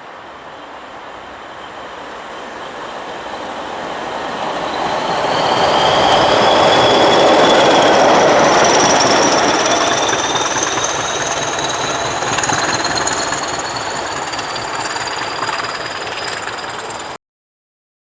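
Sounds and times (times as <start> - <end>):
train wheels rattling on rail: 0.7 - 17.2
high squealing tones: 4.2 - 17.2.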